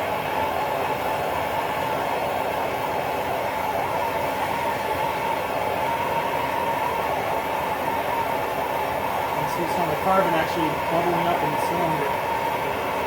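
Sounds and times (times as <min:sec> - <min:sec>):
gas torch hissing roar: 0:09.2 - 0:12.9.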